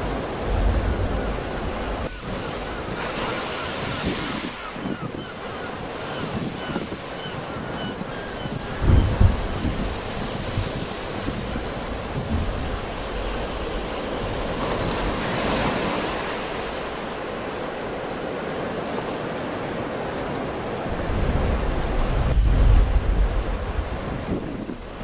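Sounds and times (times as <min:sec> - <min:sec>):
wind buffeting microphone: 0:00.0 - 0:19.0, 0:19.6 - 0:25.0
sea waves breaking on shore: 0:00.0 - 0:25.0.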